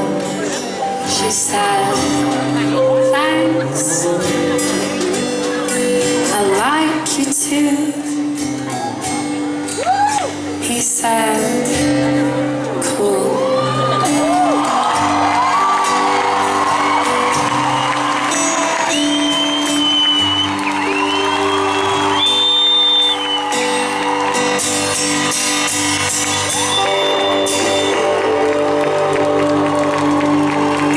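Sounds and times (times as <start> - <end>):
live pop band playing: 0.0 - 30.9
audience whooping and shouting: 8.8 - 10.4, 13.4 - 30.9.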